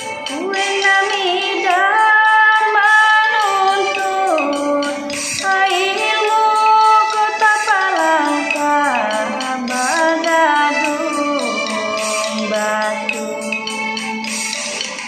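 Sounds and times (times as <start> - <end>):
woman singing long held notes: 0.3 - 14.0.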